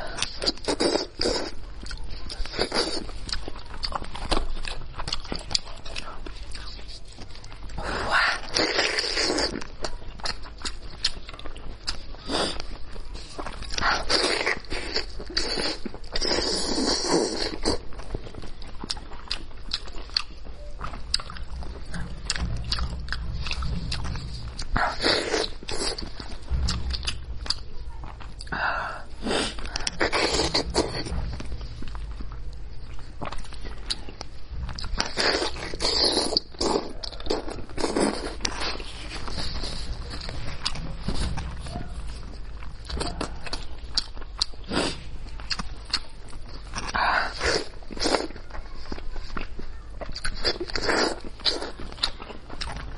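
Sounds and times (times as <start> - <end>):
chewing and smacking: 0.0 - 28.6, 29.4 - 52.9.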